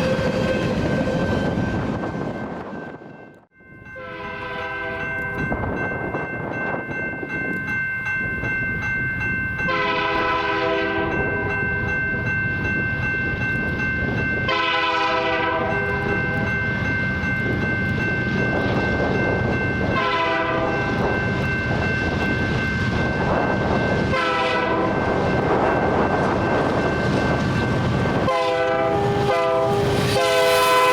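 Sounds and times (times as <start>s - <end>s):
rumble of passing train: 0.0s - 30.9s
locomotive horn blasts: 4.0s - 5.1s, 9.7s - 11.2s, 14.5s - 16.4s, 20.0s - 20.8s, 24.1s - 25.0s, 28.2s - 30.9s.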